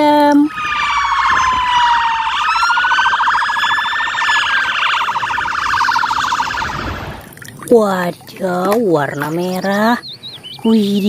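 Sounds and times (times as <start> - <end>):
toy fire truck siren wailing: 0.0 - 7.1.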